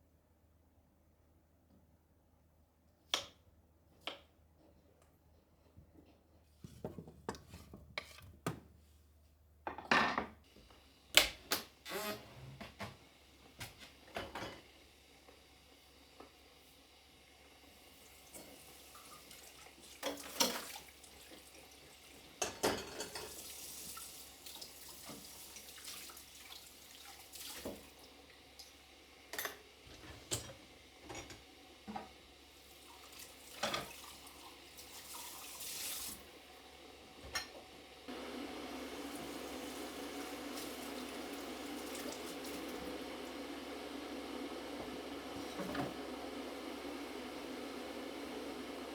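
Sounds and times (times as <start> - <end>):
dishes knocking and clinking: 9.7 - 10.4
tap water running: 11.4 - 48.9.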